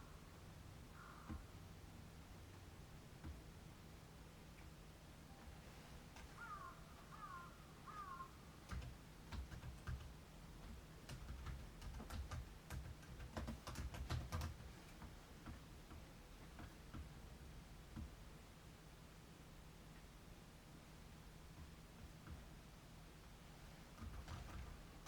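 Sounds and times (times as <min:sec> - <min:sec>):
bird calling: 0:00.9 - 0:01.6, 0:06.3 - 0:08.5.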